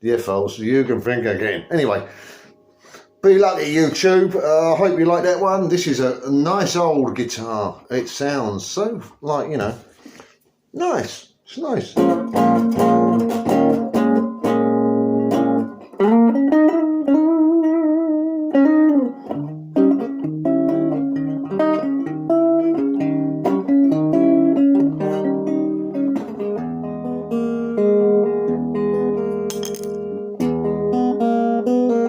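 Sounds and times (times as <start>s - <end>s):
clean electric guitar: 11.9s - 32.0s.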